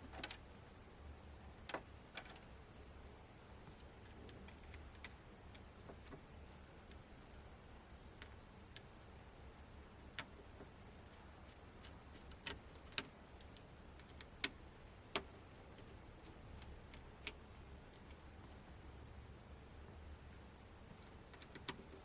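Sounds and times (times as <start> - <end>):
faint low hum: 0.0 - 22.0
small clicks and taps: 3.7 - 7.0, 11.5 - 18.6, 20.9 - 22.0.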